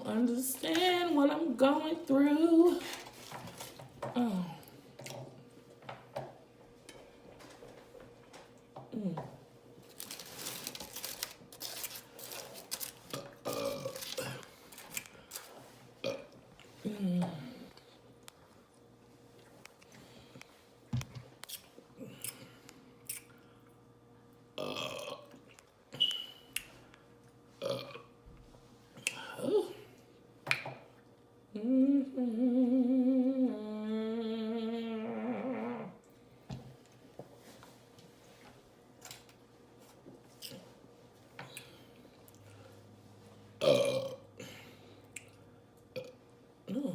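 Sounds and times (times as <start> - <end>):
woman humming: 4.1 - 4.7, 8.9 - 9.4, 16.8 - 17.7, 29.2 - 29.9, 31.5 - 36.0, 46.7 - 46.9
short burp: 13.1 - 14.4, 24.6 - 25.2, 27.6 - 28.1, 43.6 - 44.6.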